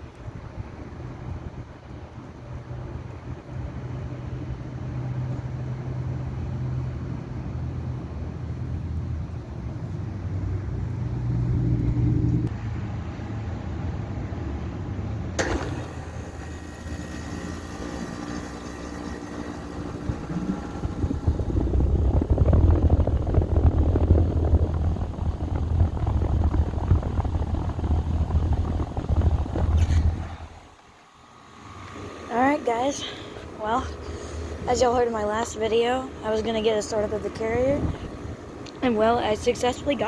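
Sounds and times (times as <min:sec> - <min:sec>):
low rumble of air conditioner: 0:00.0 - 0:40.0
compressor humming: 0:15.2 - 0:40.0
fluttering rush of fan air: 0:15.3 - 0:40.0.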